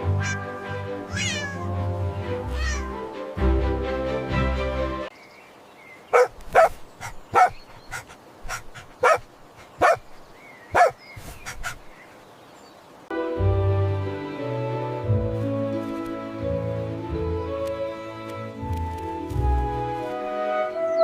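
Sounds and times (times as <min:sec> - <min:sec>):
background music: 0:00.0 - 0:05.1, 0:13.1 - 0:21.0
dog barking: 0:06.1 - 0:10.0, 0:10.7 - 0:11.8.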